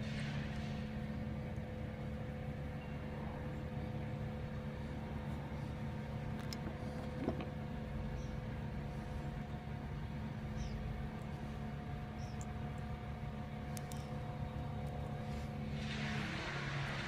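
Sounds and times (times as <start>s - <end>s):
low mechanical hum: 0.0s - 17.0s
faint clicks of small parts: 13.7s - 14.1s.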